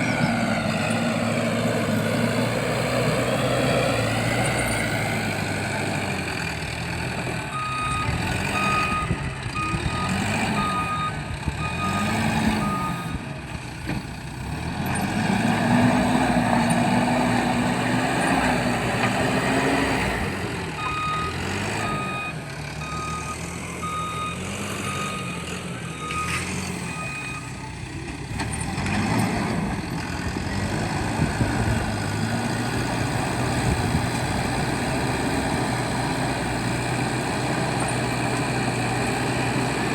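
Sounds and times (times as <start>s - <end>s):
diesel engine revving: 0.0s - 39.9s
reversing alarm beeping: 7.5s - 13.2s, 20.8s - 27.6s.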